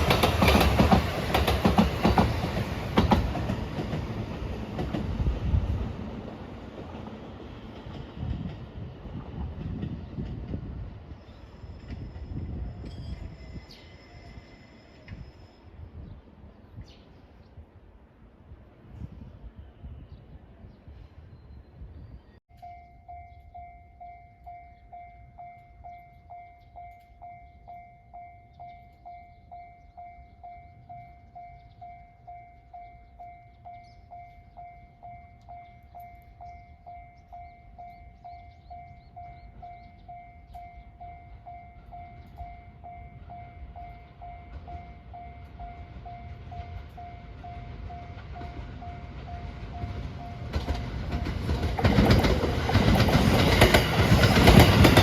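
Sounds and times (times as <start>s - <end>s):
train rumbling past: 0.0s - 55.0s
level crossing alarm ringing: 22.5s - 52.1s.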